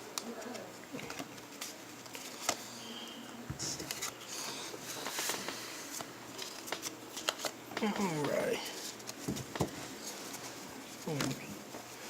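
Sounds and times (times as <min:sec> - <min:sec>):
cards rustling: 0:00.2 - 0:02.8, 0:03.6 - 0:12.0.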